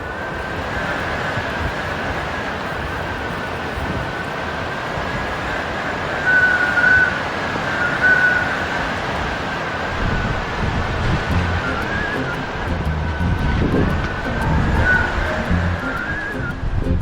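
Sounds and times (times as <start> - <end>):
wind and rain: 0.0 - 17.0
high whistle: 6.2 - 8.9, 9.9 - 17.0.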